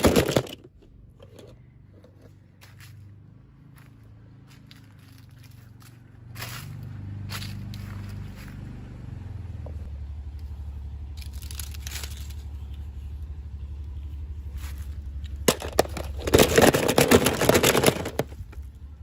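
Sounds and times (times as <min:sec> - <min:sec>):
rustling and crinkling: 0:04.5 - 0:06.8, 0:11.1 - 0:12.9, 0:14.5 - 0:18.7.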